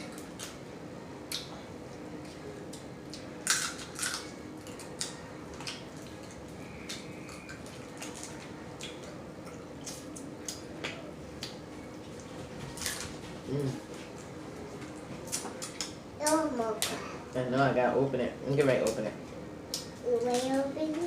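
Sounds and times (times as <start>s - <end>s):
crab shells cracking: 3.4s - 5.9s.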